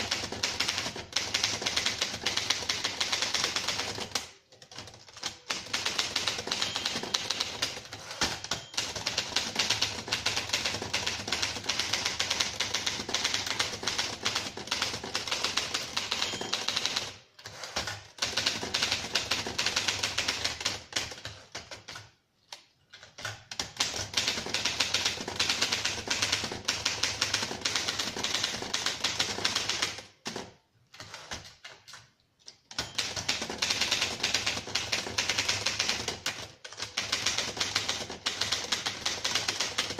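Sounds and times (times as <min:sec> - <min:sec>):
typewriter key strikes: 0:00.0 - 0:17.2, 0:32.7 - 0:39.9.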